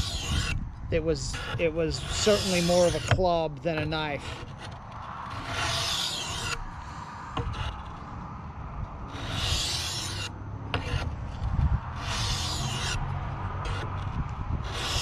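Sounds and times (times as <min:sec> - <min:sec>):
knife scraping on oil stone: 0:00.0 - 0:00.6, 0:01.2 - 0:08.0, 0:12.0 - 0:13.0, 0:14.6 - 0:15.0.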